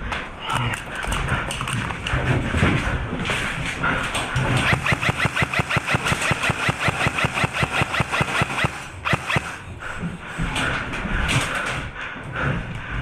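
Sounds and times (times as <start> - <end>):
airsoft rifle firing full auto: 4.5 - 9.7.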